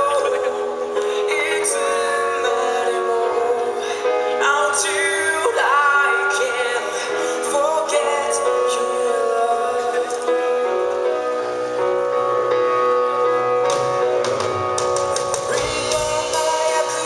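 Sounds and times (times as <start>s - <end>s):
person singing: 0.0s - 11.1s, 15.2s - 17.0s
rock band playing: 10.1s - 17.0s.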